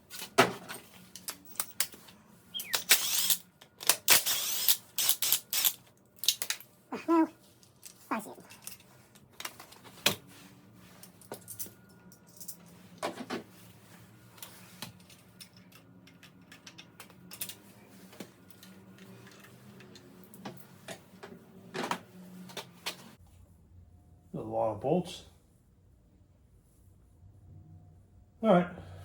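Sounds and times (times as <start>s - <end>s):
faint low hum: 23.2s - 29.0s.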